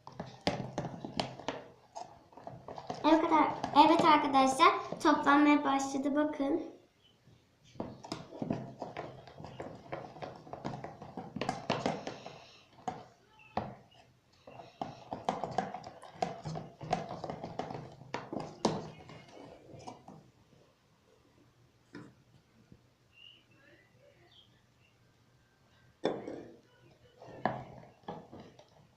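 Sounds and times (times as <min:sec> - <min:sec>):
spoon stirring slime: 0:00.0 - 0:06.0, 0:07.6 - 0:20.4, 0:26.0 - 0:28.9.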